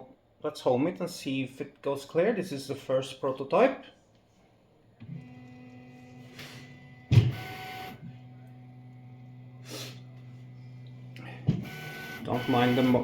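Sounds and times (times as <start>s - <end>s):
stepper motors whining: 10.1s - 13.0s.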